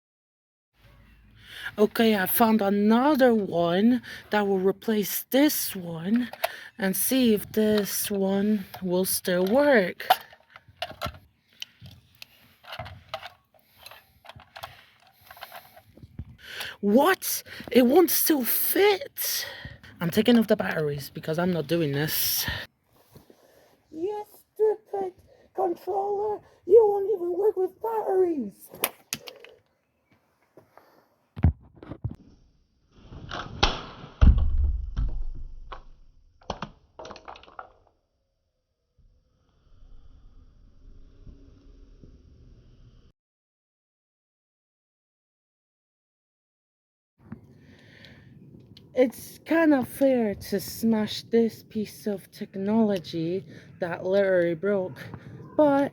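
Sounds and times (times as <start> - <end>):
plastic controller clattering: 10.0 - 16.7.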